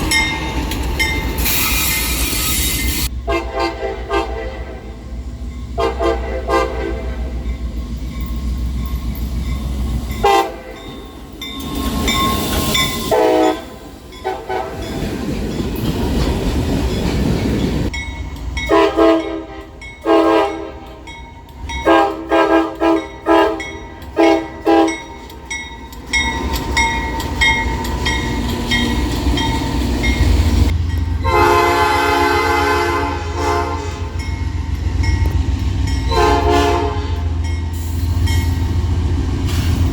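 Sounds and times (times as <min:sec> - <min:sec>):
moving train rumble: 0:00.0 - 0:39.9
locomotive air horn blasts: 0:03.2 - 0:05.0, 0:05.8 - 0:07.4, 0:10.2 - 0:10.8, 0:13.1 - 0:14.8, 0:18.7 - 0:21.0, 0:21.8 - 0:25.1, 0:31.2 - 0:34.3, 0:36.1 - 0:37.4.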